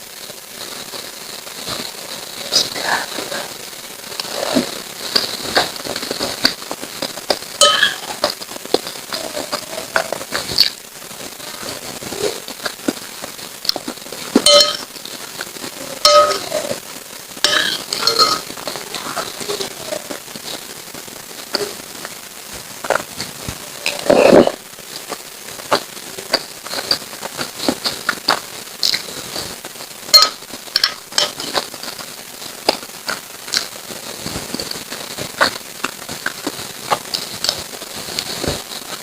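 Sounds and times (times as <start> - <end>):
spoon clinking and scraping dish: 7.6 - 8.0, 14.4 - 14.9.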